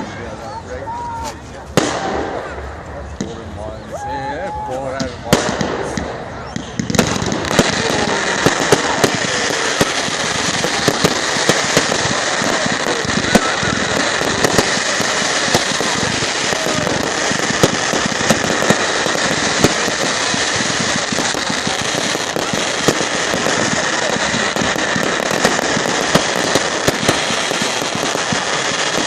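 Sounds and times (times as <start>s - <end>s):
fireworks bangs: 0.0s - 3.9s, 4.5s - 29.0s
fireworks crackling: 0.0s - 29.0s.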